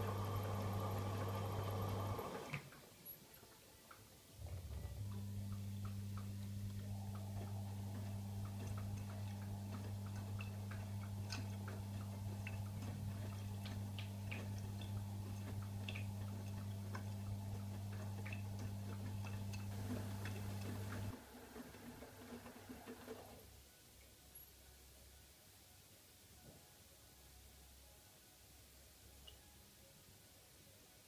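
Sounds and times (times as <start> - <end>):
washing machine humming: 0.0 - 2.8, 4.3 - 23.4
irregular ticks and clicks: 5.0 - 21.1.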